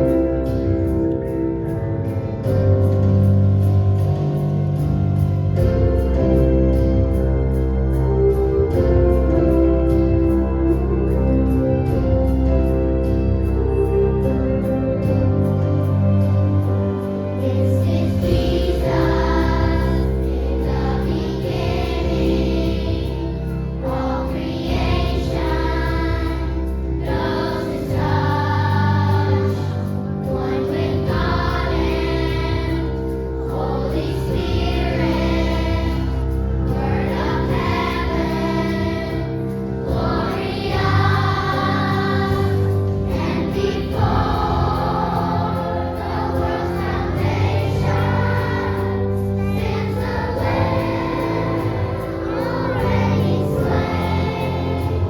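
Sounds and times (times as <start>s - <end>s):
low sustained accompaniment chords: 0.0s - 55.0s
choir singing: 13.9s - 55.0s.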